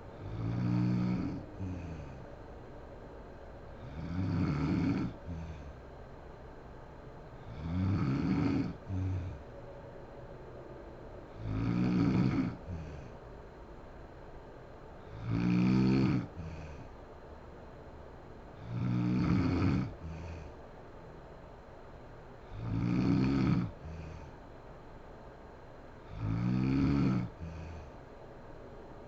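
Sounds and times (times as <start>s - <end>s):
woman snoring: 0.1s - 2.2s, 3.8s - 5.8s, 7.4s - 9.4s, 11.3s - 13.2s, 15.0s - 16.9s, 18.6s - 20.6s, 22.4s - 24.4s, 26.1s - 28.0s.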